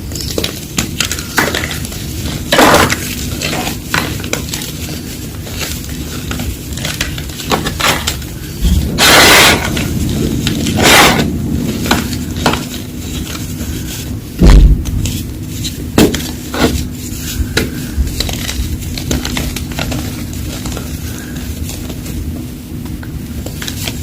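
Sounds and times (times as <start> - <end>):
chalk crunching and cracking: 0.2 - 24.0
heavy low thump: 8.6 - 13.0, 14.4 - 15.1.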